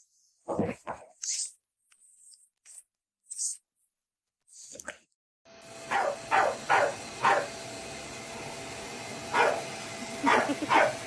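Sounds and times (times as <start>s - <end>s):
dog barking: 5.9s - 7.6s, 9.3s - 11.0s.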